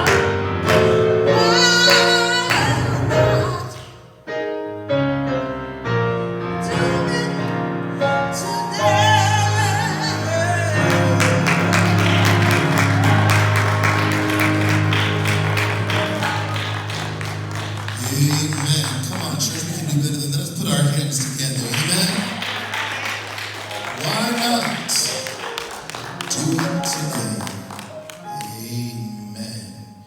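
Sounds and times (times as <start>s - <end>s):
keyboard and bass: 0.0s - 3.8s, 4.4s - 22.3s
person singing: 0.0s - 4.0s, 6.5s - 17.2s.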